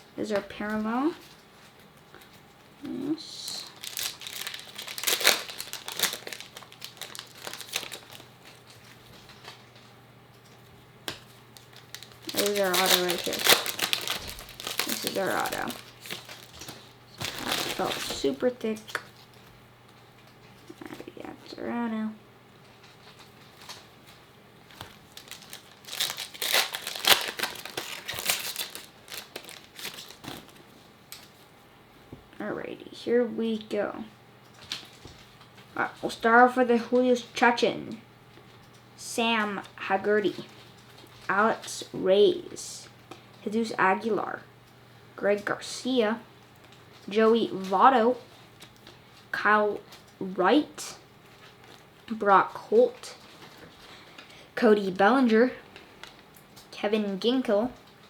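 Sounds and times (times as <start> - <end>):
card wrapper crinkling: 3.3 - 9.7, 11.2 - 19.2, 22.8 - 30.6.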